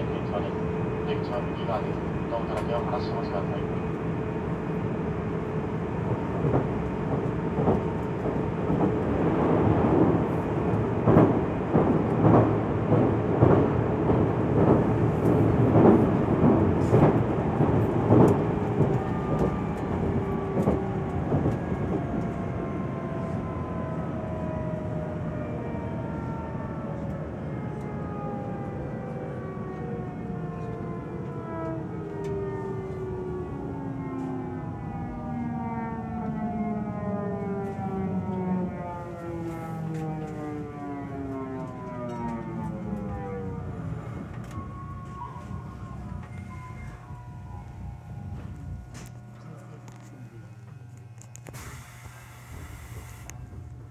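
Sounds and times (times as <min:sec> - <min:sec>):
train braking whine falling in pitch: 0:41.4 - 0:53.8.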